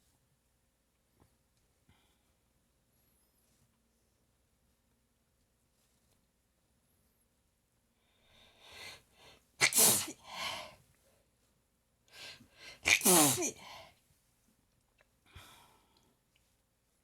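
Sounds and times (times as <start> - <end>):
person sneezing: 9.6 - 10.7, 12.6 - 13.8.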